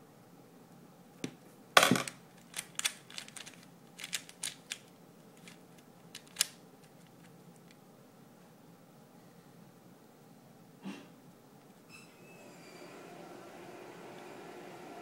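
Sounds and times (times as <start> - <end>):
plastic speed cube clicking: 2.5 - 6.6.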